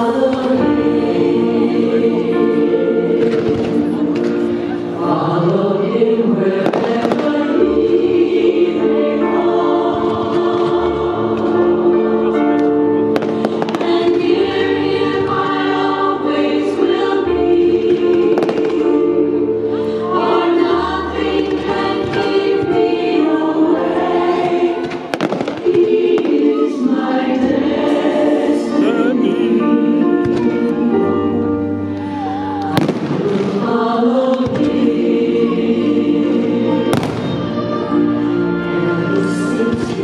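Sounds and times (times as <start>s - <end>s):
choral singing: 0.0s - 40.0s
firework bangs: 24.8s - 26.3s, 32.7s - 33.6s, 36.9s - 37.5s.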